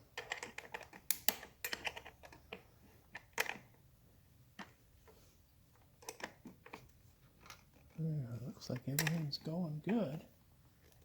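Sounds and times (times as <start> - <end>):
small parts clicking and tapping: 0.1 - 3.8, 5.8 - 8.0, 8.6 - 11.0.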